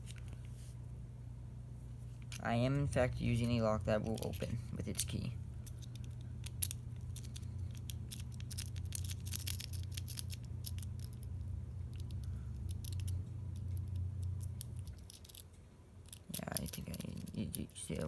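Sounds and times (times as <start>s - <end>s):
steady low hum: 0.0s - 18.0s
lock pick clicking and scraping: 4.0s - 11.2s, 11.9s - 15.4s.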